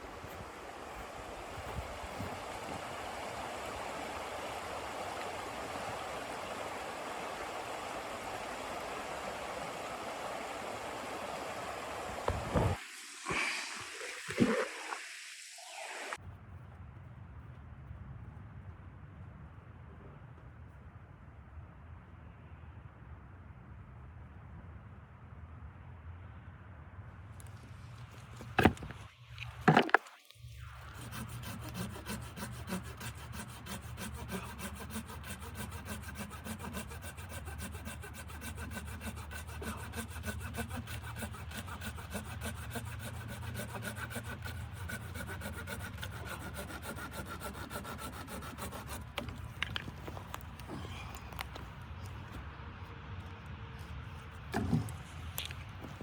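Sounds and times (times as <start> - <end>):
hand saw cutting wood: 0.0 - 15.0, 28.4 - 29.0, 29.6 - 30.0, 30.6 - 51.6, 54.3 - 56.0.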